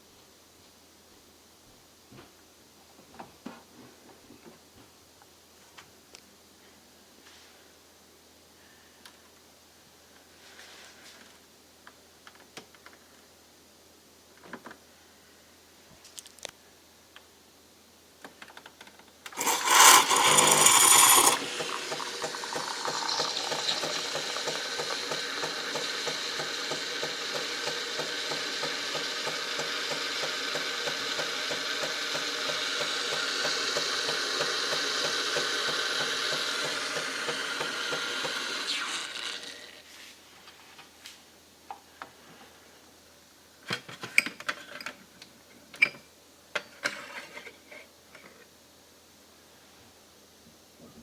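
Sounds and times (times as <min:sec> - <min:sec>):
espresso machine hissing and pulsing: 0:19.4 - 0:39.8.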